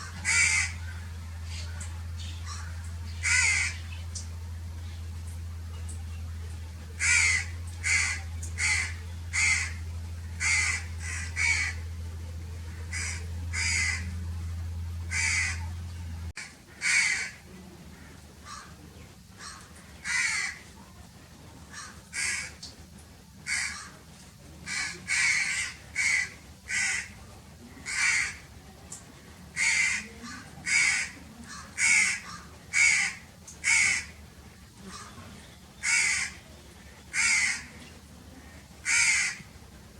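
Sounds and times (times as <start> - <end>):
crows cawing: 0.0 - 0.8, 2.4 - 3.8, 7.0 - 9.8, 10.4 - 11.8, 12.8 - 14.1, 15.1 - 15.6, 16.4 - 17.4, 18.0 - 18.8, 19.4 - 20.6, 21.7 - 22.6, 23.5 - 24.0, 24.7 - 27.2, 27.8 - 28.4, 29.6 - 34.2, 35.8 - 36.4, 37.1 - 37.7, 38.8 - 39.5.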